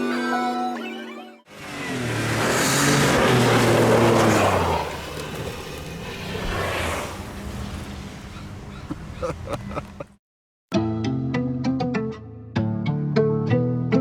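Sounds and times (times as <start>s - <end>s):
snowmobile engine running: 1.5s - 10.0s.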